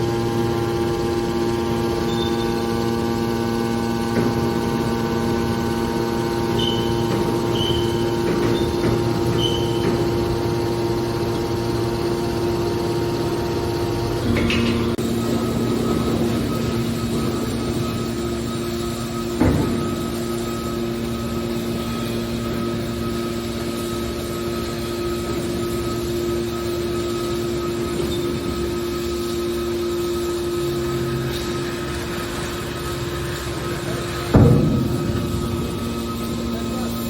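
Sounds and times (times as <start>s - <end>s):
hydraulic machine hum: 0.0s - 37.0s
machine knock: 4.0s - 12.8s, 13.8s - 22.6s, 32.4s - 37.0s.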